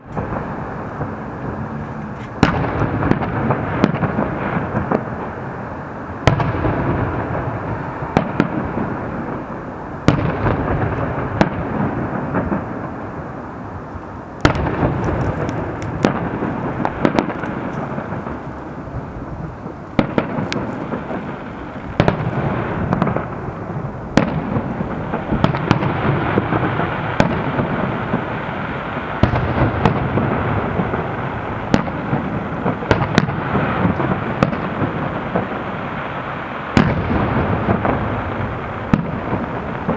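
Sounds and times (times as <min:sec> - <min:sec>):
rumble and crackle of bursts: 0:00.0 - 0:39.9
small firework pops: 0:02.0 - 0:05.3, 0:14.4 - 0:18.7, 0:19.5 - 0:23.4, 0:31.7 - 0:39.9
firework shells bursting: 0:14.4 - 0:39.9.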